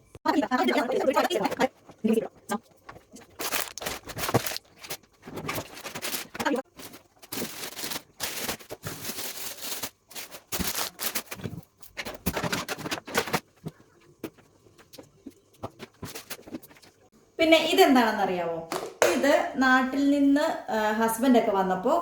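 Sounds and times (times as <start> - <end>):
packets rustling and crinkling: 2.9 - 17.1.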